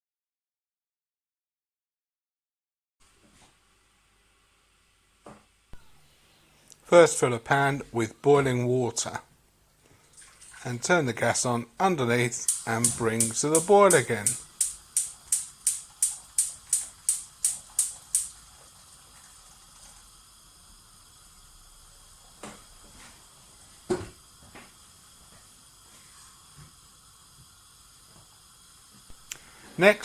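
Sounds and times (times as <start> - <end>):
faint steady gas hiss: 3.0 - 30.0
gas hob igniter clicking: 12.3 - 18.4.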